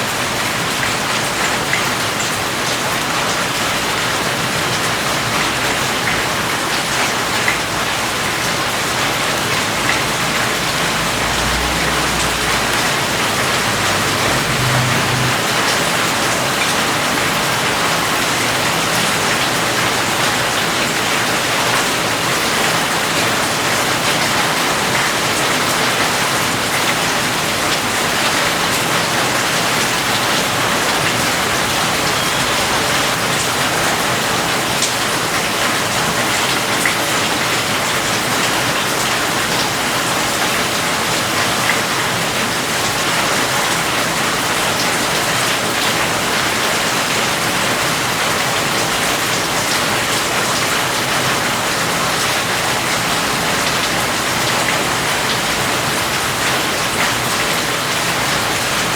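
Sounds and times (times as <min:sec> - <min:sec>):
heavy rain hissing: 0:04.1 - 0:36.7.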